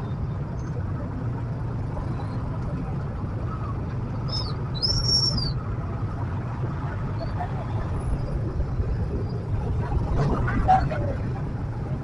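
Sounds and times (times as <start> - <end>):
high whistling chirps: 4.3 - 5.6.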